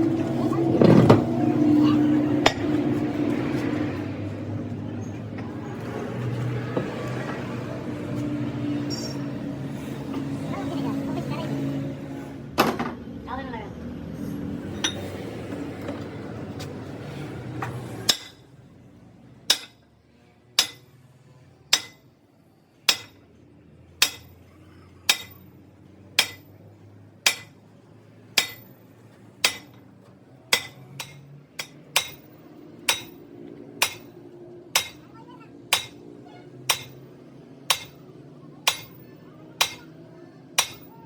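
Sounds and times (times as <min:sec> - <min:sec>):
hammer striking metal: 0:02.4 - 0:02.8, 0:08.9 - 0:09.2, 0:14.8 - 0:15.1, 0:18.1 - 0:18.4, 0:19.5 - 0:19.8, 0:20.6 - 0:20.9, 0:21.7 - 0:22.1, 0:22.9 - 0:23.2, 0:24.0 - 0:24.4, 0:25.1 - 0:25.4, 0:26.2 - 0:26.5, 0:27.2 - 0:27.6, 0:28.4 - 0:28.7, 0:29.4 - 0:29.8, 0:30.5 - 0:35.1, 0:35.7 - 0:37.0, 0:37.7 - 0:39.9, 0:40.6 - 0:41.0.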